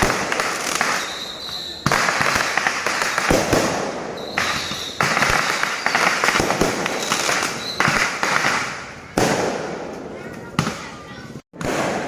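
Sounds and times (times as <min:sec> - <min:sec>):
fireworks crackling and banging: 0:00.0 - 0:12.0.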